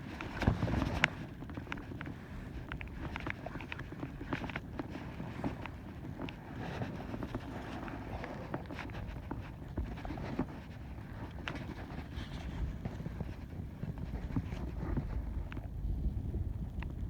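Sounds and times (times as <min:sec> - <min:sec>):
wind buffeting microphone: 0:11.2 - 0:17.0.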